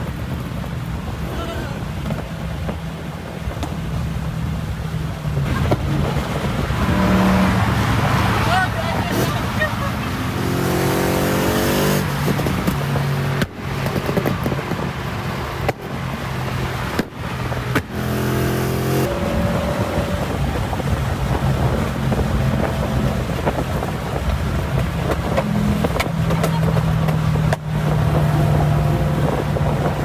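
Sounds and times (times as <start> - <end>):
car engine revving: 3.4 - 30.0.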